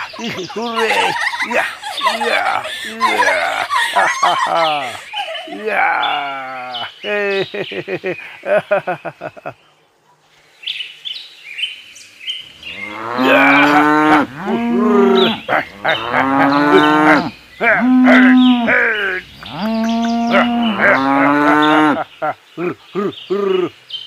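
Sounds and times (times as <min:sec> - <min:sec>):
cattle mooing: 0:12.6 - 0:22.0.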